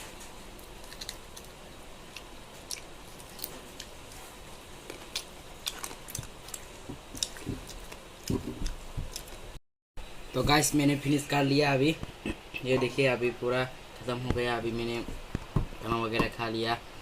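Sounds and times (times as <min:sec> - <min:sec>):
person chewing wetly: 0:00.6 - 0:09.6.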